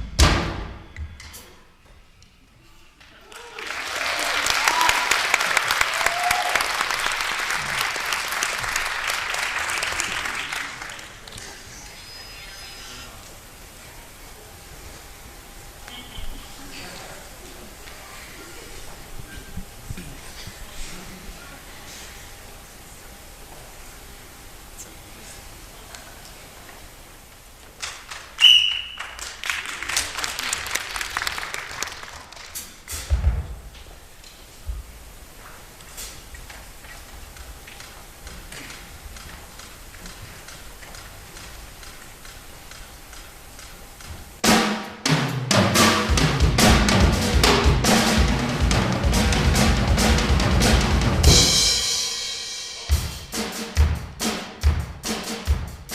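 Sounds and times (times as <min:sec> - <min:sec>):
audience clapping: 0:03.0 - 0:12.0, 0:27.7 - 0:32.9
person whooping: 0:03.2 - 0:05.2, 0:05.8 - 0:06.8
high whistle-like tone: 0:28.4 - 0:29.2.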